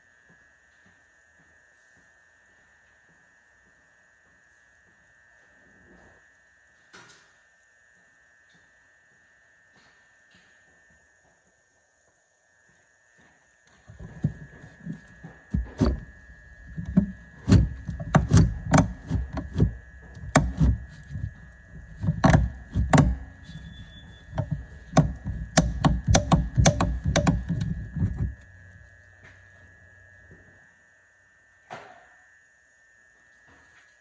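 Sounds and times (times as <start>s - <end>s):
tools knocking and clunking: 13.9s - 28.4s.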